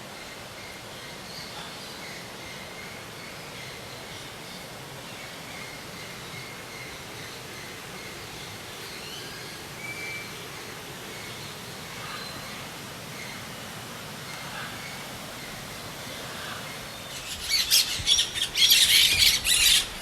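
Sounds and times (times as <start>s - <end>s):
steady background hiss: 0.0s - 20.0s
faint bird calls: 14.2s - 20.0s.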